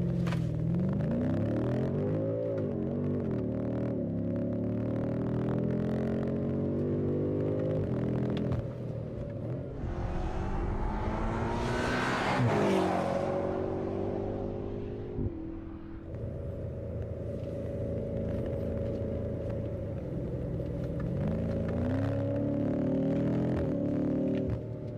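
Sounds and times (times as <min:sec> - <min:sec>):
car engine revving: 0:09.7 - 0:23.7.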